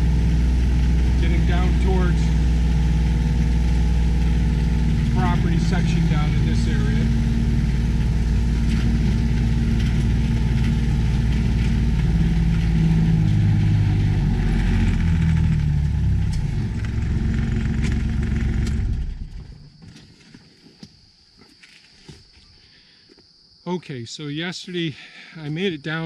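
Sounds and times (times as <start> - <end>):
vehicle engine running: 0.0 - 19.8.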